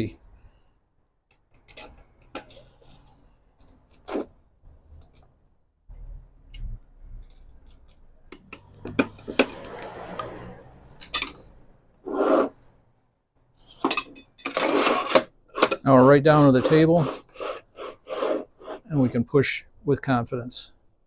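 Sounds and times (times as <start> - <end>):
metal parts clicking and clinking: 1.5 - 2.7, 3.5 - 5.3, 7.1 - 9.9, 10.9 - 11.5
metal scraping on metal: 8.8 - 12.8, 13.6 - 19.3.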